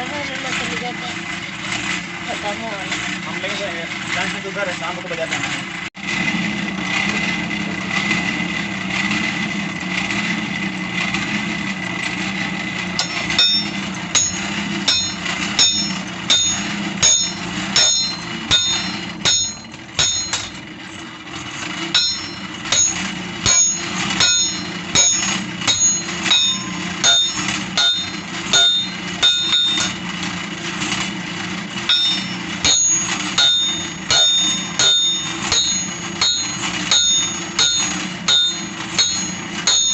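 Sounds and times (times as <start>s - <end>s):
mechanical drone: 0.0s - 39.9s
high whine: 12.8s - 39.9s
hammer striking steel on anvil: 12.9s - 20.8s, 21.6s - 30.2s, 31.8s - 39.9s.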